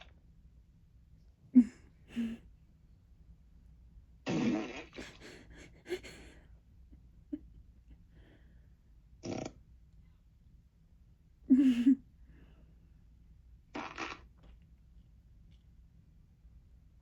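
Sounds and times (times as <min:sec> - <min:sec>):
fart sound effects from speaker: 0:04.3 - 0:05.0, 0:09.2 - 0:09.6, 0:13.7 - 0:14.3.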